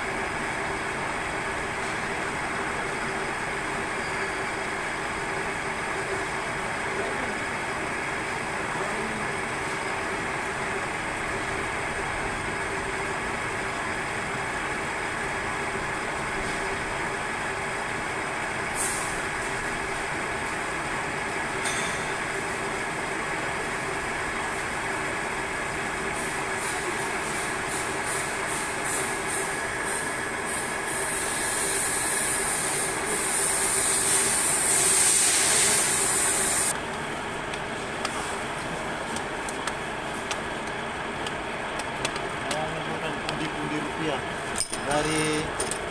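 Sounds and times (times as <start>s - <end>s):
metal lathe running: 31.4s - 45.9s.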